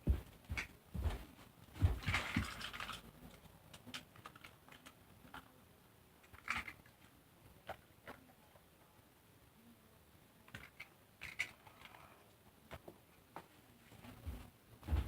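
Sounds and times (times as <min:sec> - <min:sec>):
plastic toy trains clicking: 0:02.0 - 0:05.5, 0:06.2 - 0:07.1, 0:10.5 - 0:12.2.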